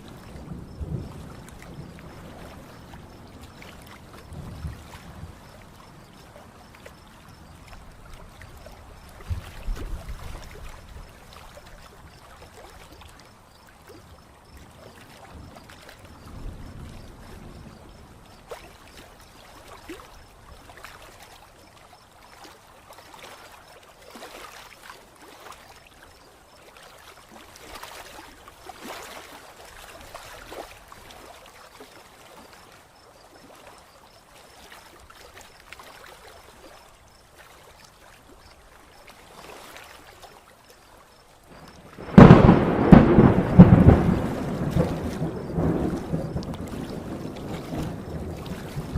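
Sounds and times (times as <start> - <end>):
low thunder rumbles: 0.3 - 2.4, 41.5 - 48.9
rushing watery noise: 33.8 - 48.9.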